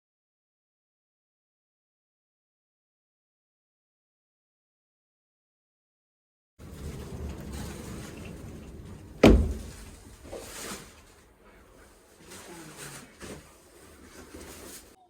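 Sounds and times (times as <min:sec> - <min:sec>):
handling noises: 0:06.6 - 0:15.0
door shutting with a thump: 0:06.7 - 0:10.8.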